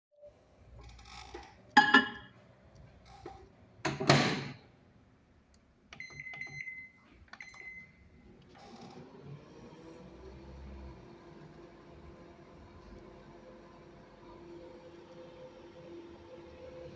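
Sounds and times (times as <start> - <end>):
microwave oven clunks: 3.9 - 4.6.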